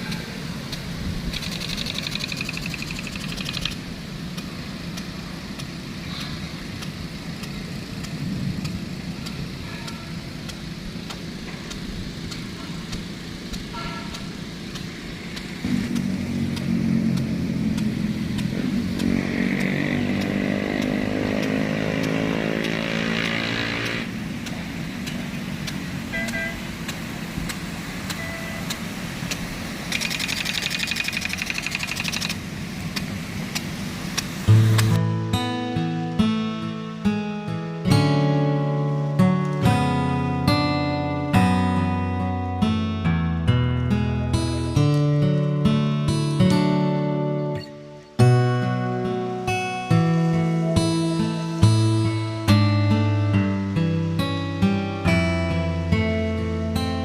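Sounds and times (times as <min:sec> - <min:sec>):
motor engine running: 0:00.0 - 0:33.1
louder engine rising and falling: 0:15.0 - 0:26.0.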